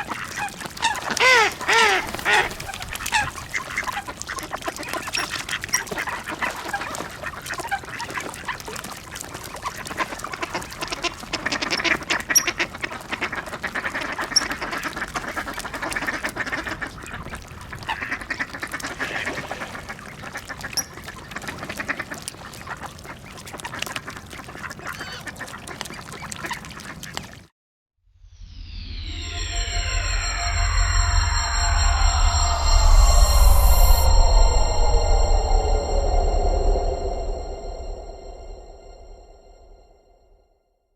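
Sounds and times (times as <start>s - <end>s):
ducks quacking: 0.0s - 27.4s.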